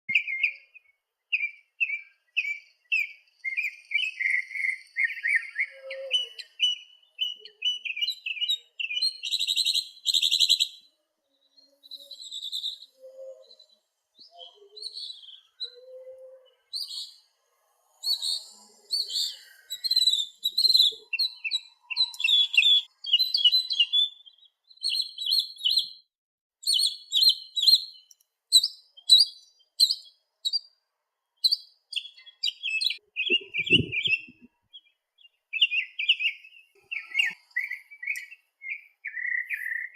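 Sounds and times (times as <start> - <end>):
songbirds chirping: 0.1 - 39.9
buzzy bird trill: 31.5 - 35.0.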